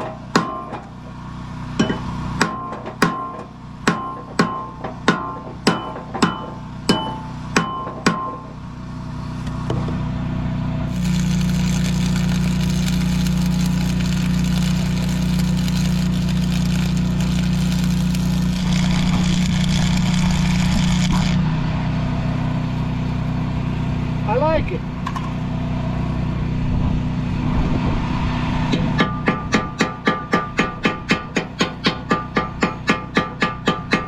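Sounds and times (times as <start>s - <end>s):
arc welding crackling hiss: 10.9s - 19.8s.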